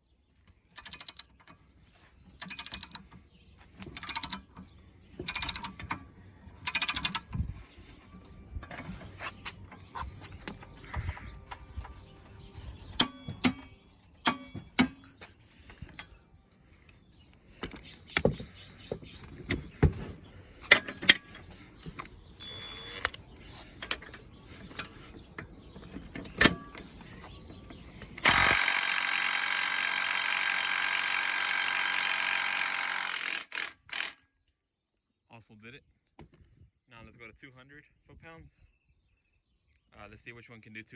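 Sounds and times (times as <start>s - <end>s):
metallic clicks of tools: 0.7s - 1.6s, 2.3s - 3.2s, 3.8s - 7.4s, 28.0s - 34.2s
impact wrench hammering: 2.4s - 3.0s, 3.8s - 4.6s, 5.2s - 6.0s, 6.6s - 7.2s, 13.0s - 15.1s, 28.2s - 34.2s.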